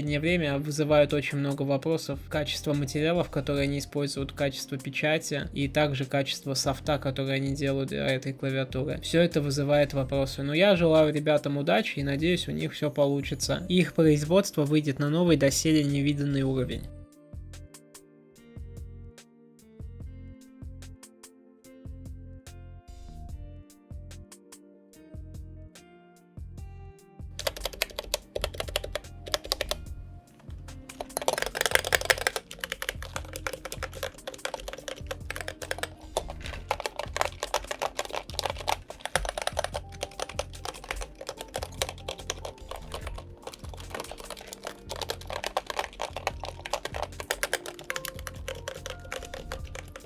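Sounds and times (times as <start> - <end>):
background music: 0.0 - 50.0
keyboard key clacks: 27.4 - 29.8, 30.9 - 50.0.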